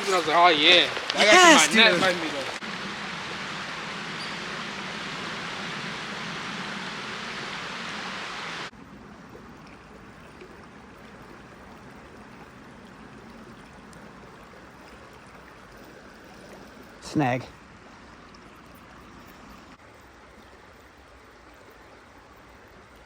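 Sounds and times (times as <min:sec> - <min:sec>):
creek water rushing: 0:00.0 - 0:08.7.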